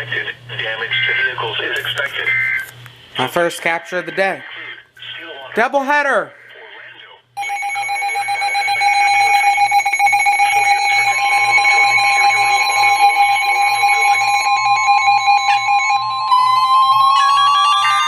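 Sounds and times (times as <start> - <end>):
higher alarm tone: 7.4 - 18.0
loud electronic alarm tone: 7.4 - 18.0.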